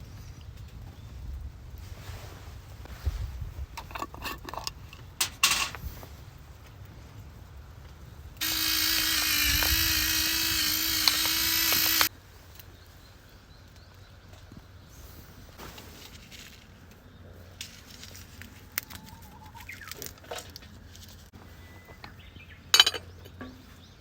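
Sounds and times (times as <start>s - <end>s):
knocks and clatters: 5.2s - 5.8s
small electric motor whirring: 8.4s - 12.1s.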